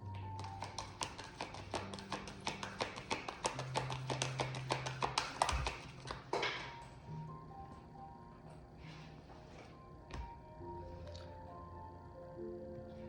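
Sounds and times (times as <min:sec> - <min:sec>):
soft background music: 0:00.0 - 0:13.0.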